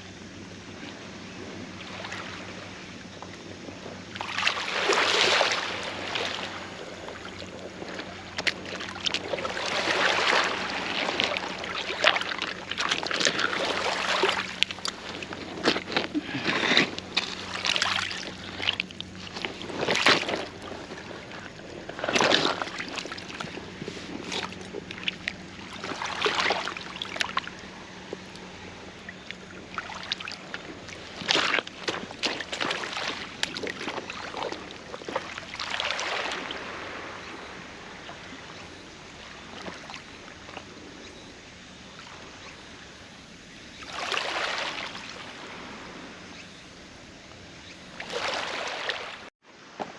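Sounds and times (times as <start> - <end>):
faint steady hum: 0.0 - 49.9
water sloshing and splashing: 0.6 - 43.0, 43.7 - 49.9
rustles: 3.2 - 36.0.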